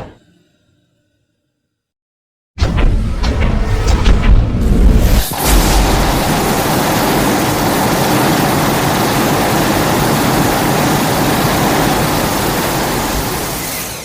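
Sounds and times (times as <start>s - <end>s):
loud steady rushing noise: 3.9s - 14.0s.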